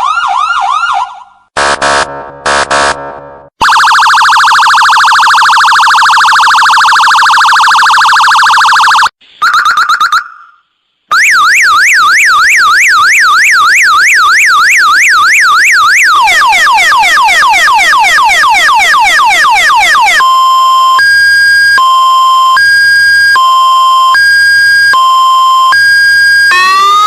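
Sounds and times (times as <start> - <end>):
electronic siren tones: 1.6 - 27.0.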